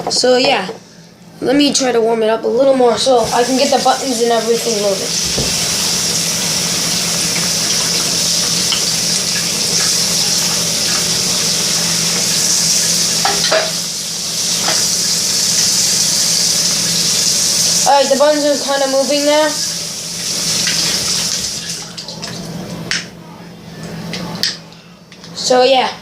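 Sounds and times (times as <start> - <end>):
tap water running: 2.8 - 23.1.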